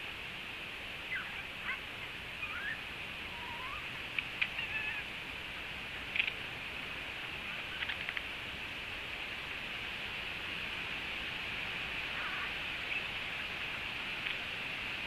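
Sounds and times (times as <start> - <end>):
steady outdoor hiss: 0.0 - 15.0
short bird calls: 2.4 - 5.1.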